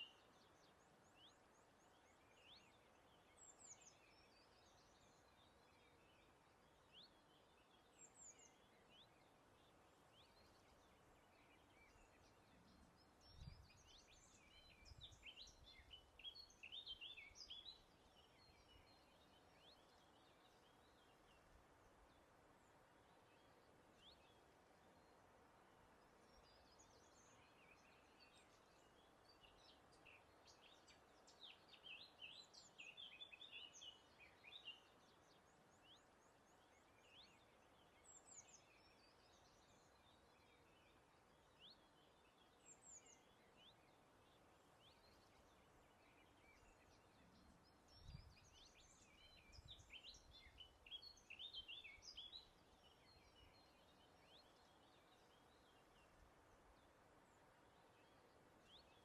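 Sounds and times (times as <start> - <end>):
songbirds singing: 0.0 - 59.0.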